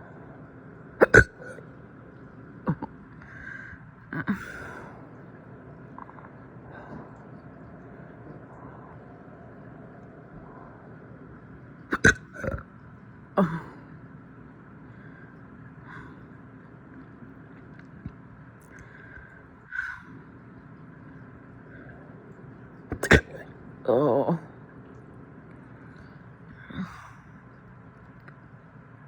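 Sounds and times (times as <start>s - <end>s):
person hiccuping: 1.0s - 1.6s, 2.6s - 2.9s, 11.9s - 12.6s, 22.9s - 23.4s.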